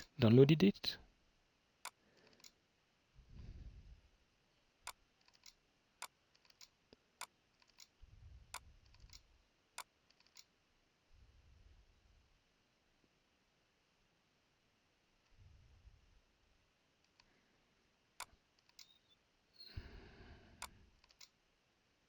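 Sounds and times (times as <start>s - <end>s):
computer mouse clicks: 4.9s - 5.6s, 6.4s - 6.8s, 10.1s - 10.5s, 18.2s - 19.0s, 20.6s - 21.4s.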